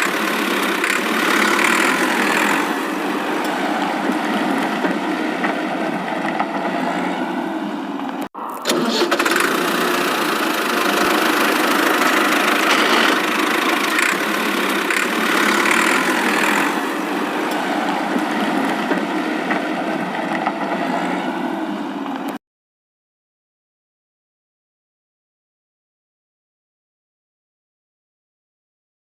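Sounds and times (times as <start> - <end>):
tractor engine running: 0.0 - 22.4.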